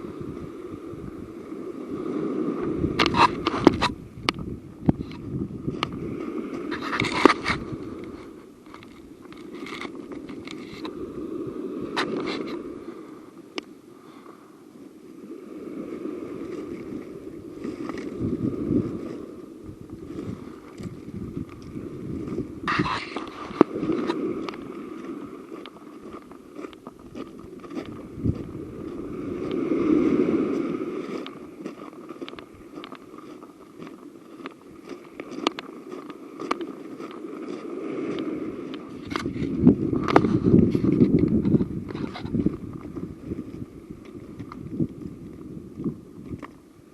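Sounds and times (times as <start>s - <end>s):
wind buffeting microphone: 0.0s - 13.6s, 15.2s - 46.9s
clicks and rustles: 6.6s - 11.0s, 32.1s - 37.2s.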